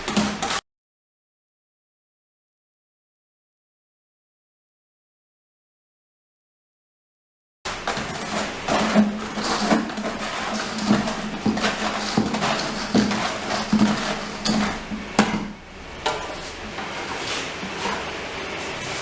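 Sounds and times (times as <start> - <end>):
tool knocking and scraping tub: 0.0 - 0.6, 7.7 - 19.0
steady low hum: 7.7 - 19.0.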